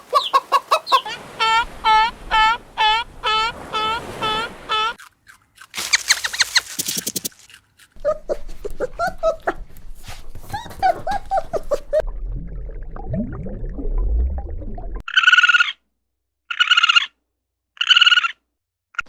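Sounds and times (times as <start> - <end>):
high squeaks: 5.8 - 7.5
animal chatter: 5.8 - 7.6
pitched animal calls: 5.8 - 9.6.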